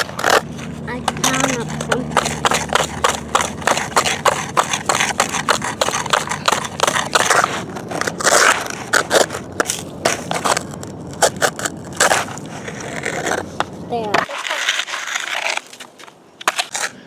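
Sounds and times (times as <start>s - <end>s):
crunching in dirt and gravel: 0.0s - 17.0s.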